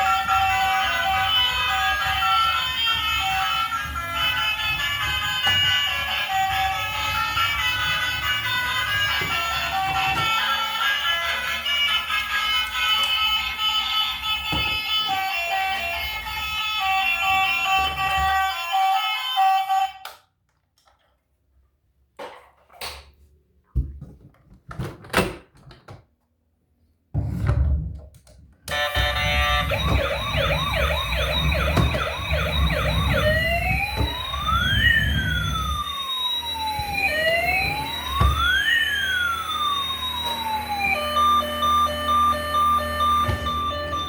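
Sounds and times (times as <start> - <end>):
toy electronic siren: 0.0 - 20.2, 28.7 - 44.0.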